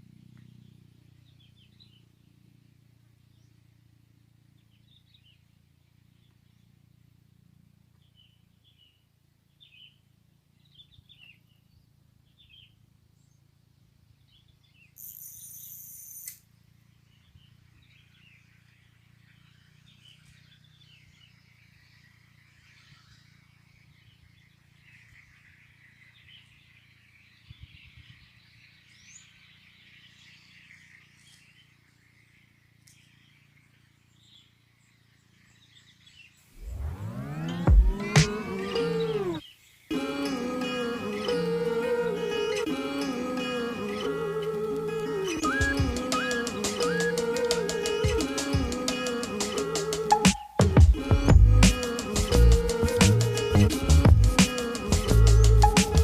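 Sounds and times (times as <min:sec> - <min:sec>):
small birds chirping: 0:00.0 - 0:56.0
loud high-pitched buzz: 0:36.6 - 0:39.4.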